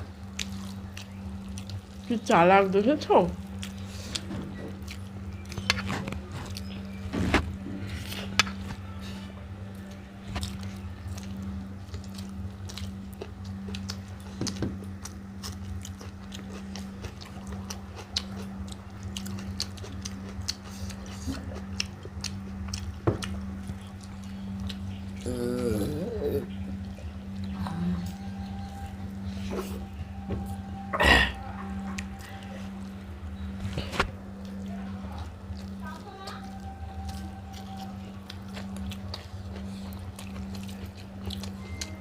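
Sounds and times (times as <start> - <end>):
steady low hum: 0.0 - 42.0
chewing and mouth smacks: 0.2 - 2.2, 3.4 - 7.0, 9.7 - 25.3, 31.6 - 42.0.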